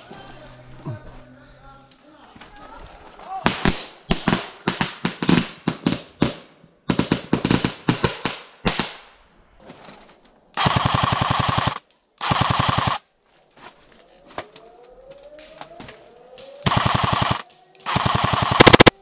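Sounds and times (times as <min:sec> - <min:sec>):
airsoft full-auto bursts: 0:10.6 - 0:13.0, 0:16.6 - 0:19.0
airsoft gun single shots: 0:18.0 - 0:19.0.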